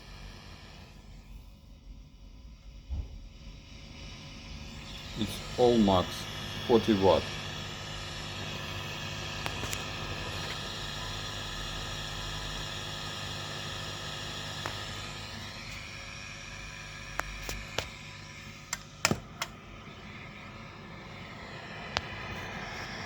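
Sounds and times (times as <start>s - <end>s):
amplifier hiss: 0.0s - 1.6s, 2.2s - 23.0s
sharp clicks: 18.7s - 19.6s.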